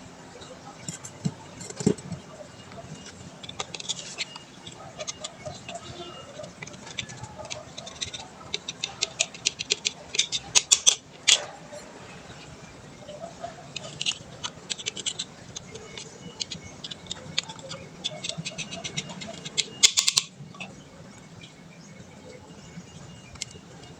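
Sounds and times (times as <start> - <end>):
tools clicking and clinking: 0.8 - 11.6, 13.4 - 20.7.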